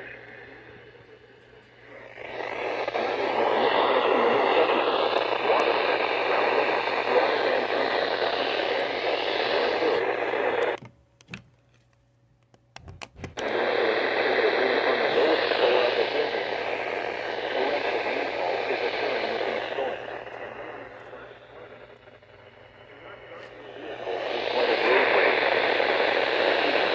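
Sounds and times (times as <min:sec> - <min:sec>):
radio static hiss: 0:00.0 - 0:10.9, 0:12.8 - 0:26.9
sharp clicks: 0:12.4 - 0:13.6.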